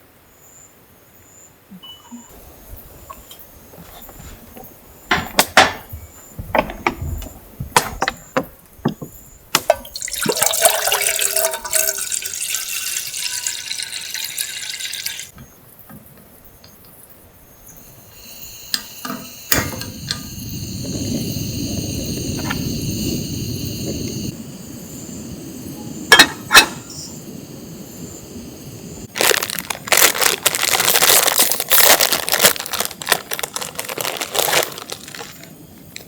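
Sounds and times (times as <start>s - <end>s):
water pouring: 9.6s - 15.3s.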